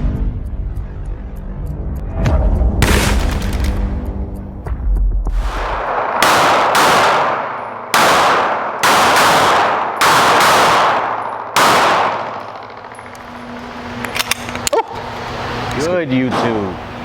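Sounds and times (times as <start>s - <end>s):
low rumble: 0.0s - 8.8s
pistol shots echoing: 5.7s - 13.2s.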